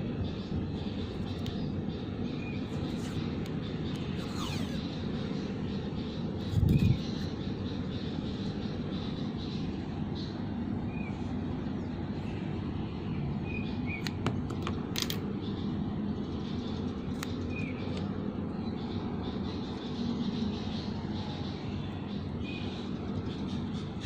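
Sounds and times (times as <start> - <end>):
low outdoor rumble: 0.0 - 24.0
bird chirps: 0.1 - 12.4.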